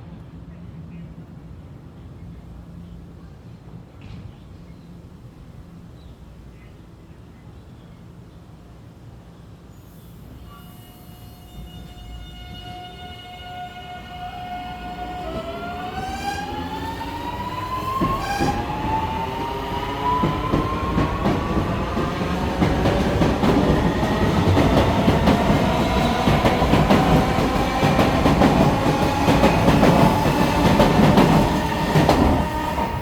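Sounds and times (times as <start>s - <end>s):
train wheels clacking over rail joints: 20.1s - 33.0s.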